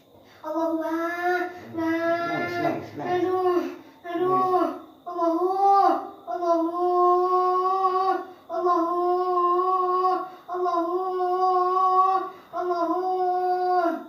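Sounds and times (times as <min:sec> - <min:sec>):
high-pitched voice wailing: 0:00.7 - 0:04.8.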